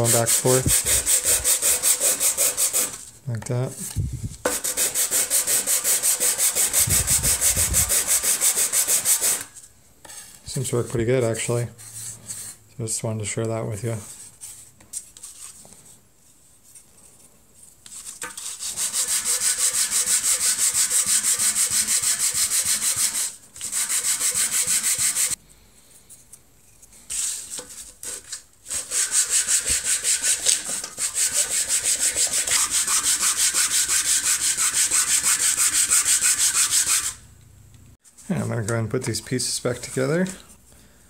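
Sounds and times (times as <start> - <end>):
wood hand-sanded on sandpaper: 0.0 - 3.0, 4.5 - 9.5, 18.4 - 25.4, 28.0 - 37.2.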